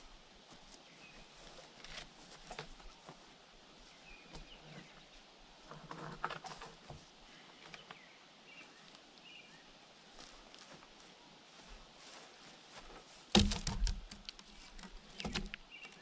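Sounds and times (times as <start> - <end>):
log being handled and shifted: 0.5 - 8.0, 12.0 - 16.0.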